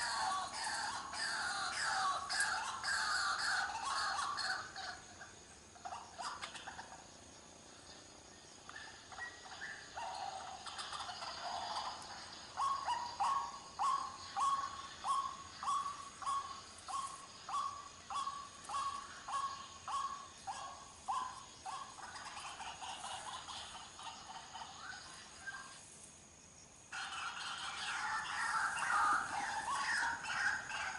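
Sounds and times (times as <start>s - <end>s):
waterhen calling: 26.9s - 30.9s.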